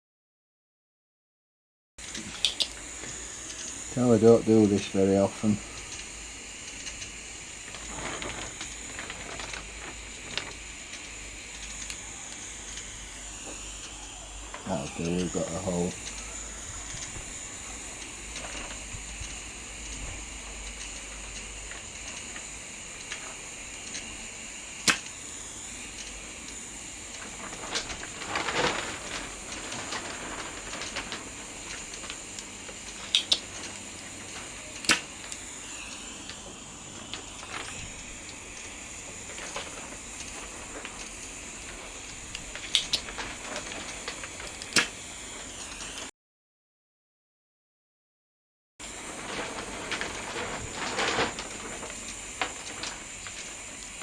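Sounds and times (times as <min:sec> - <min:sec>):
small tools clicking and tapping: 0:02.0 - 0:03.8, 0:15.9 - 0:17.3, 0:24.8 - 0:25.2, 0:30.8 - 0:36.1, 0:37.1 - 0:45.0
gas soldering iron hissing: 0:02.0 - 0:46.1, 0:48.8 - 0:54.0
scraping rustle: 0:07.5 - 0:10.8, 0:27.1 - 0:35.4, 0:36.1 - 0:44.6, 0:48.8 - 0:54.0.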